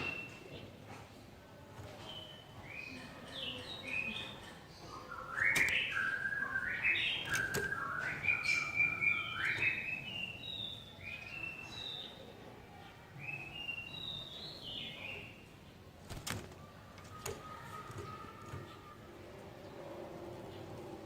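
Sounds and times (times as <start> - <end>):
songbird singing whistled phrases: 0.0 - 0.6, 3.6 - 12.2, 13.2 - 15.4
sharp clicks: 5.4 - 6.1, 7.2 - 8.2.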